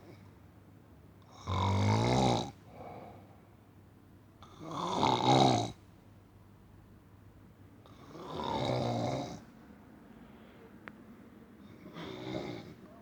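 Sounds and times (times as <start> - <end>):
faint breath: 2.7 - 3.5, 10.1 - 10.8.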